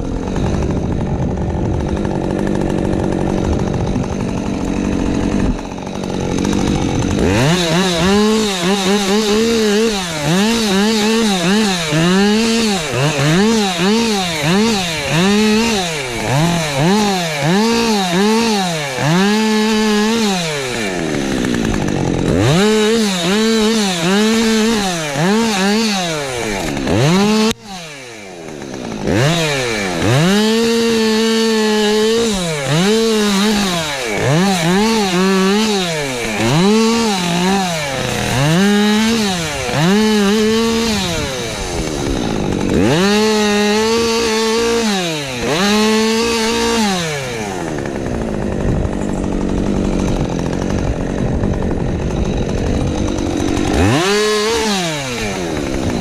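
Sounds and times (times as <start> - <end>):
chainsaw revving: 0.0 - 56.0.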